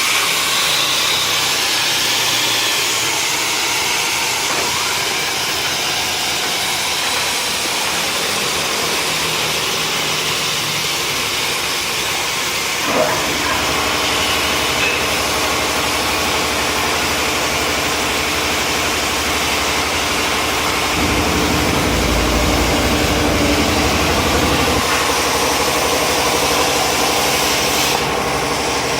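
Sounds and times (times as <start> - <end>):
plasma cutter hissing: 0.0 - 28.9
machine hum and low rumble: 19.0 - 26.8.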